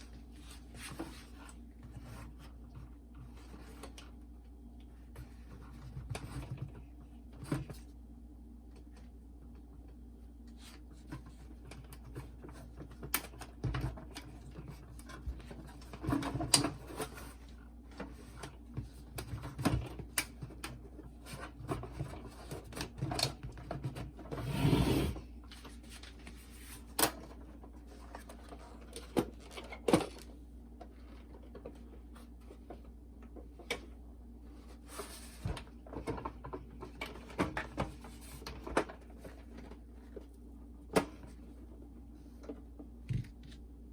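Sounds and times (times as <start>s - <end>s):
rustling scrape: 24.4s - 26.9s.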